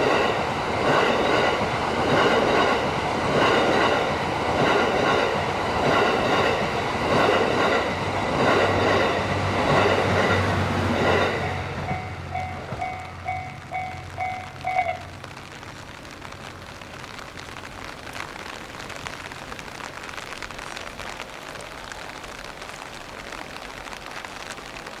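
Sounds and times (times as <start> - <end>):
train rumble: 0.0 - 18.4
level crossing warning bell: 8.8 - 15.2
rain pattering on umbrella: 12.4 - 25.0.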